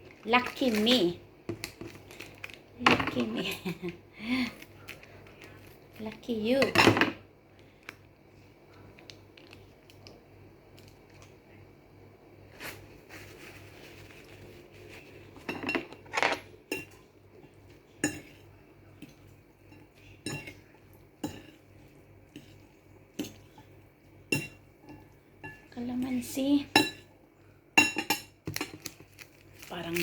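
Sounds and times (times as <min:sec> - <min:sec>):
utensils clinking on dishware: 0:15.4 - 0:17.0.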